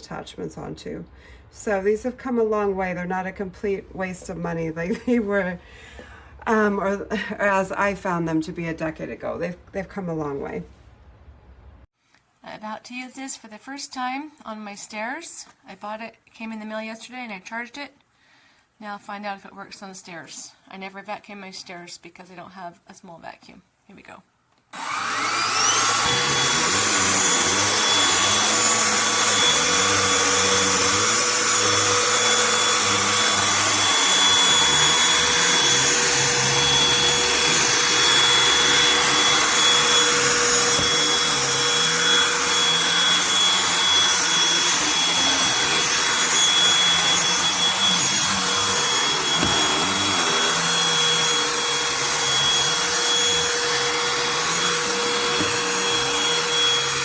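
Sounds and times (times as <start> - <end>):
handheld vacuum motor whine: 24.8 - 57.0.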